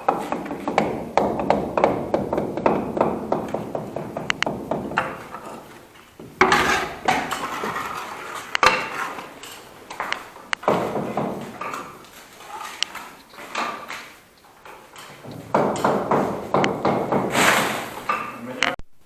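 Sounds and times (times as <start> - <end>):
metal fittings tapping and clinking: 3.0 - 16.9
metal clattering scrape: 5.2 - 9.9, 17.3 - 18.4.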